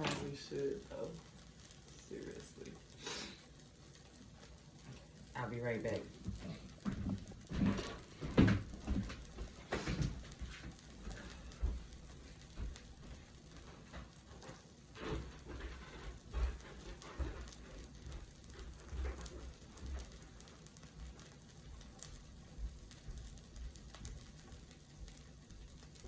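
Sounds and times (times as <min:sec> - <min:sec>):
food sizzling on hot surface: 0:00.0 - 0:26.0
heavy footsteps: 0:06.2 - 0:14.4.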